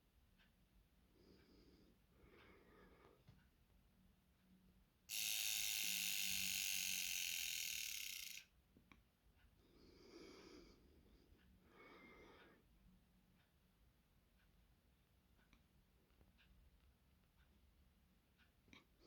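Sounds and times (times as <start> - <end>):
wristwatch alarm buzzing: 5.1 - 8.4.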